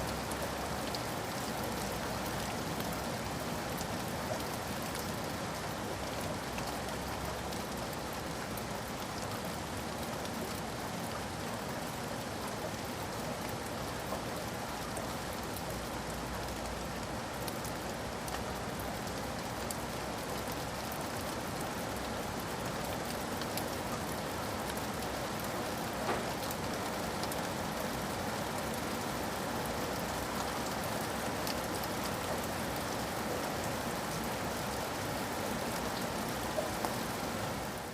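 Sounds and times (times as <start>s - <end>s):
steady rain falling: 0.0s - 37.9s
tap: 26.1s - 26.3s.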